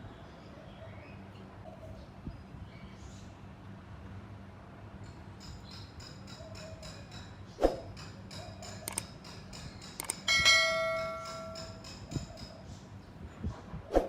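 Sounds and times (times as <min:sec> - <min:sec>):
bell-like ring: 0:10.3 - 0:12.0.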